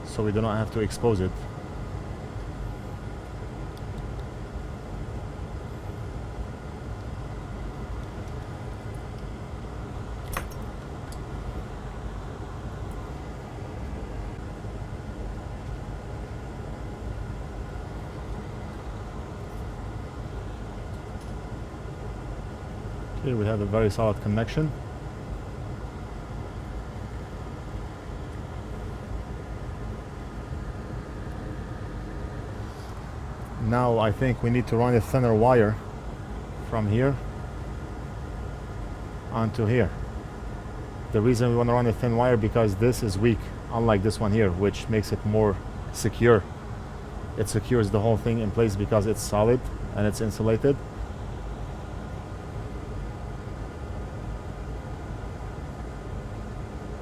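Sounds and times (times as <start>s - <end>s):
low hum with hiss: 0.0s - 57.0s
low rumbling background noise: 0.0s - 57.0s
sharp click: 10.3s - 10.6s.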